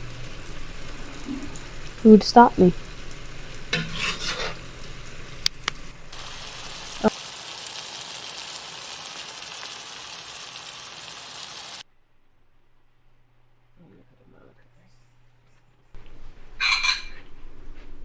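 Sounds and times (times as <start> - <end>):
food sizzling in frying pan: 0.0 - 5.4, 6.1 - 11.8.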